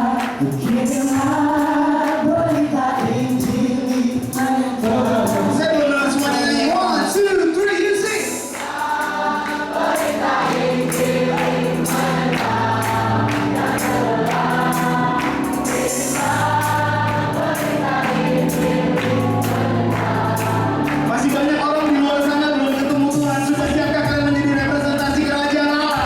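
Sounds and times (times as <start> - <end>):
choir singing a hymn: 0.0 - 26.0
instrumental accompaniment: 0.0 - 26.0.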